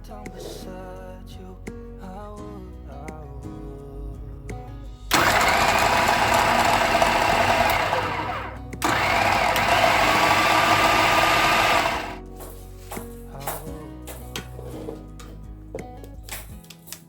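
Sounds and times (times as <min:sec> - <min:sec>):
electric kitchen chopper motor: 0:05.1 - 0:12.2.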